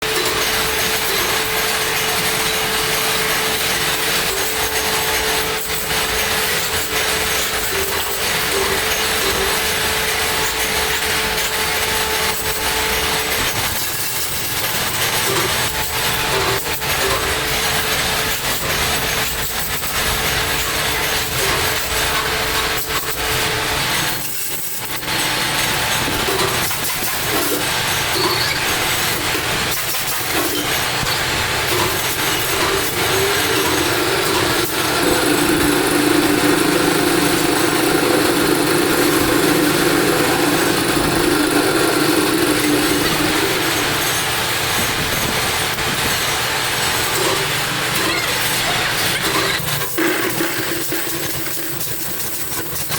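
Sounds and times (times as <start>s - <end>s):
workshop machinery humming: 0.0s - 52.9s
power tool running: 30.0s - 46.8s.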